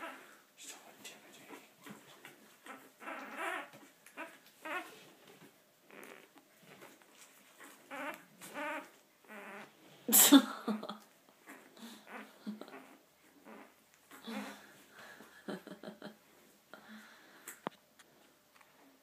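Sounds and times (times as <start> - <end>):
puppies whimpering: 2.6 - 4.9.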